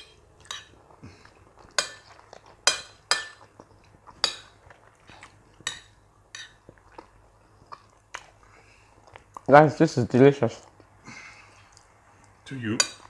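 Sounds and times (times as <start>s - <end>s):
cutlery clinking on a plate: 0.0s - 0.8s, 1.8s - 3.5s.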